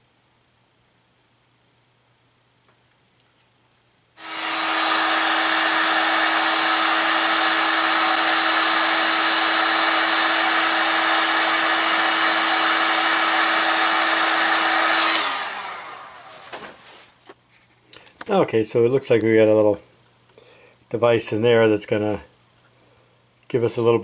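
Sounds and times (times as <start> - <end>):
heat gun blowing with hum: 4.2 - 17.2.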